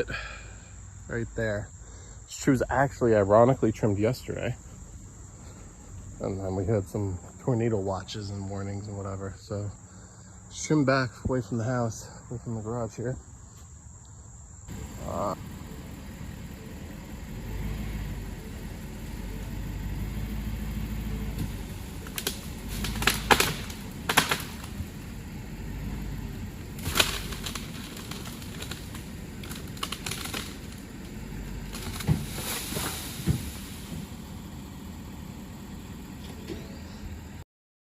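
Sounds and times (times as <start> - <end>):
leaves rustling: 13.4 - 35.8
truck engine running: 14.7 - 37.4
tree limbs dragged: 16.8 - 34.5
branches cracking and snapping: 21.2 - 25.2, 26.6 - 34.1.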